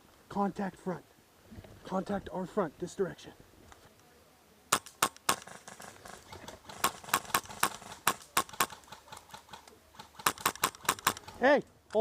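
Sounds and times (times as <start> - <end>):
airsoft gun shots: 6.7 - 8.8, 10.2 - 11.4.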